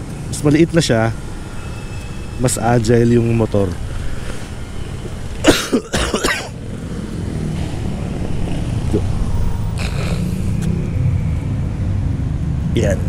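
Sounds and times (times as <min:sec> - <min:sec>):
rush of noise: 0:00.0 - 0:13.0
surrounding traffic: 0:00.0 - 0:13.0
man coughing: 0:05.4 - 0:06.6.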